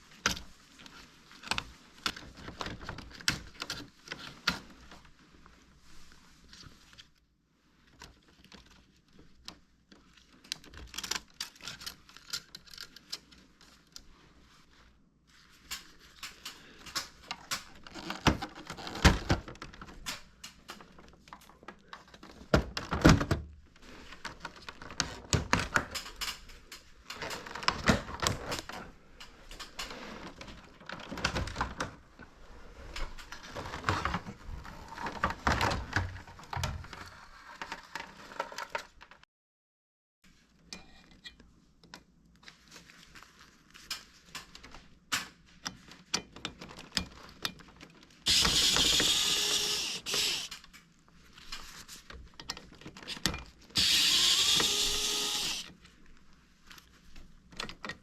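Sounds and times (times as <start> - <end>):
plastic parts clicking and rattling: 8.0 - 13.8, 24.1 - 32.0, 43.9 - 55.8.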